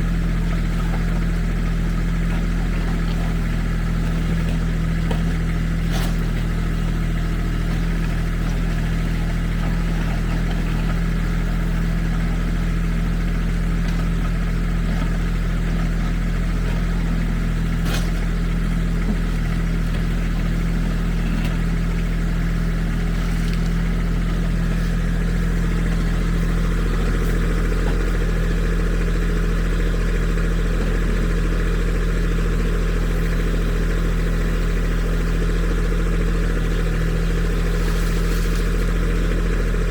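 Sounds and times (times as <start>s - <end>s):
diesel engine running steadily: 0.0s - 39.9s.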